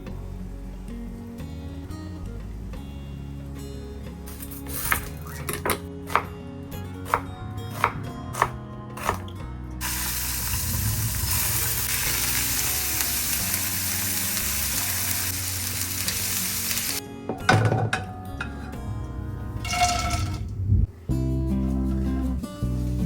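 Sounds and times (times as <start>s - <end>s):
food sizzling in hot oil: 9.8s - 17.0s.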